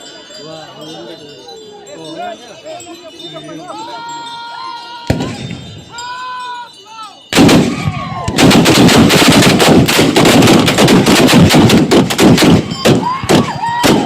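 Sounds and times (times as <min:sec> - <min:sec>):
volley of gunshots: 0:07.3 - 0:14.0.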